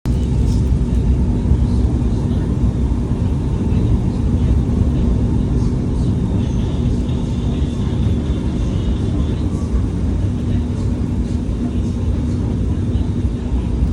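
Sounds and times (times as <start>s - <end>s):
faint steady hum: 0.1s - 13.9s
train rumbling: 0.1s - 13.9s.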